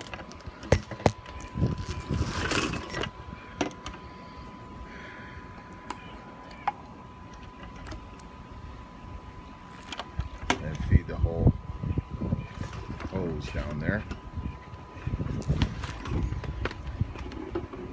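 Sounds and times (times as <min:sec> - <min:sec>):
rustling handling noise: 0:00.0 - 0:03.1
faint steady high tone: 0:00.3 - 0:15.4.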